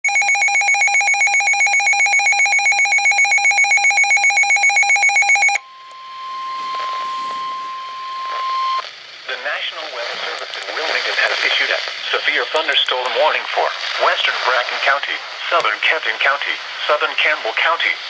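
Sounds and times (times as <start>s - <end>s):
rapidly pulsing electronic beep: 0.0s - 8.8s
steady single-pitch warning tone: 0.0s - 8.8s
radio hiss: 5.7s - 18.0s.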